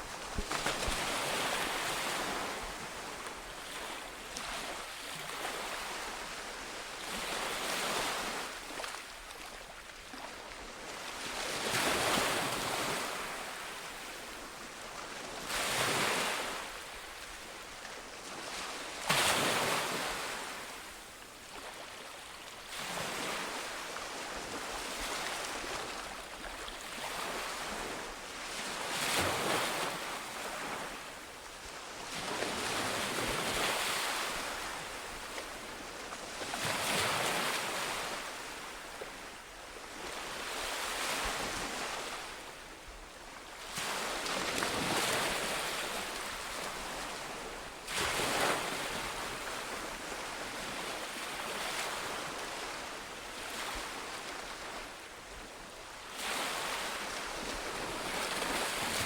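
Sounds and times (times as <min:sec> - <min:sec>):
sea waves breaking on shore: 0:00.0 - 0:17.4, 0:43.6 - 0:55.0, 0:56.1 - 0:59.0.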